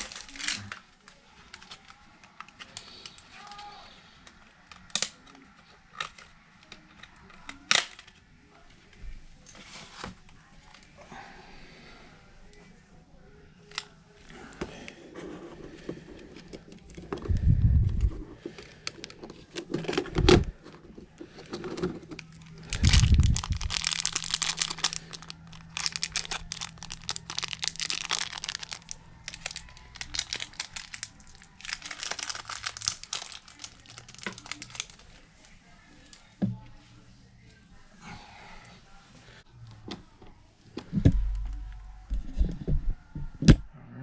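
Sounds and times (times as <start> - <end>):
crinkling and rustling: 0.0 - 3.3, 13.6 - 36.6
heavy low thumps: 22.8 - 23.8.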